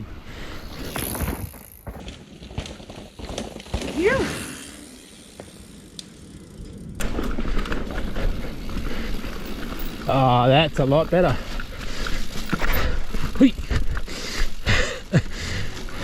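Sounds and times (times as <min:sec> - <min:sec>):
bike tyres on dirt: 0:00.0 - 0:16.0
bike chain and frame rattling: 0:00.4 - 0:16.0
rider calling out: 0:03.8 - 0:05.1.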